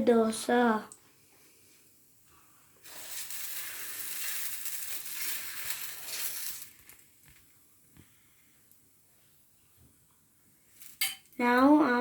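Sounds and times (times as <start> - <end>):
batter sizzling on a pan: 2.3 - 7.6.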